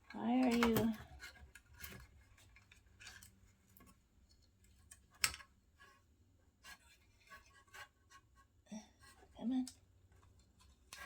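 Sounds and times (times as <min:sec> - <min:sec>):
small parts and tools clicking: 0:00.0 - 0:05.5.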